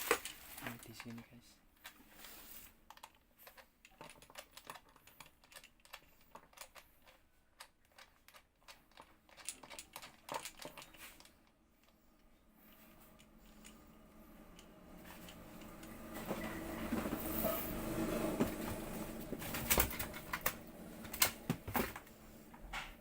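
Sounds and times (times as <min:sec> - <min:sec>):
plastic parts clicking and tapping: 0:00.0 - 0:02.0, 0:02.8 - 0:12.3, 0:19.3 - 0:22.1.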